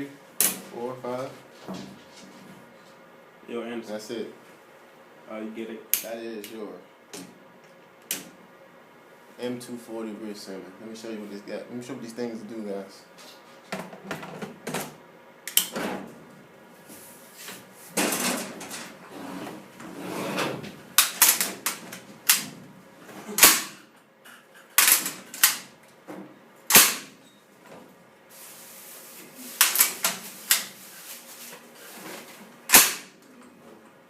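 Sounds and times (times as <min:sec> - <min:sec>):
metal sliding and rasping: 0:18.6 - 0:20.7.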